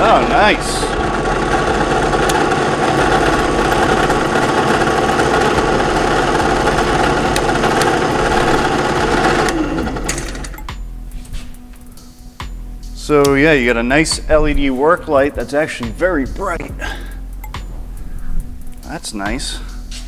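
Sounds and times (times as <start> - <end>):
drill press motor whirring: 0.0 - 14.6.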